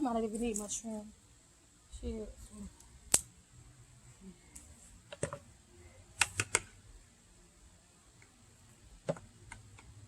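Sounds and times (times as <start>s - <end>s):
low background hiss: 0.0s - 10.0s
sharp clicks of picking tomatoes: 2.8s - 3.3s.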